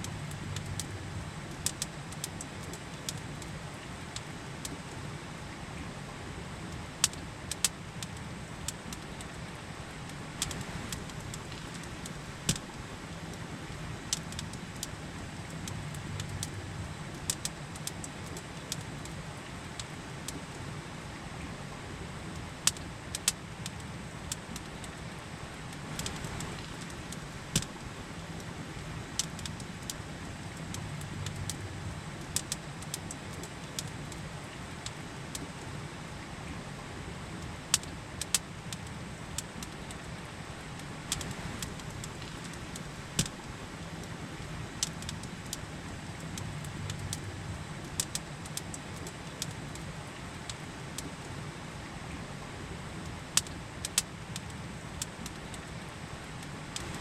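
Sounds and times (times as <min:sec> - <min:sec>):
campfire crackling and popping: 0:00.0 - 0:04.9, 0:07.0 - 0:20.6, 0:22.2 - 0:35.6, 0:37.3 - 0:51.4, 0:52.9 - 0:57.0.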